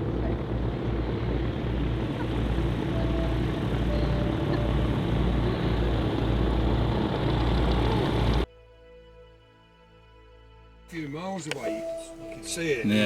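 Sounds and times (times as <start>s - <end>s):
aircraft engine drone: 0.0s - 8.5s.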